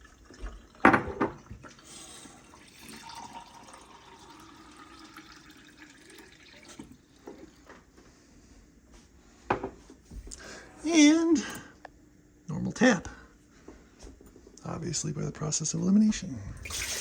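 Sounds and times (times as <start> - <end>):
water pouring in thin stream: 1.7 - 6.9, 16.6 - 17.0.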